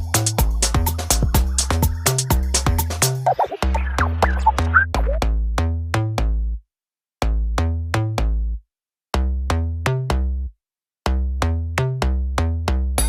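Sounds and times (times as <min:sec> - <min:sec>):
plucked notes over a beat: 0:00.0 - 0:06.3.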